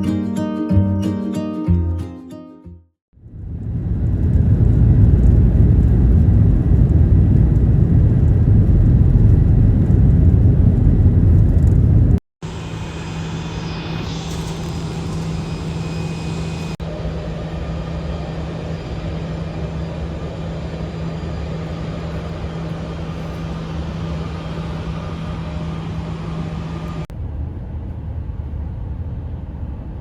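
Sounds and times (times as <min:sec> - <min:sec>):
vehicle rumble: 0:03.2 - 0:16.8
constant low hum: 0:03.2 - 0:30.0.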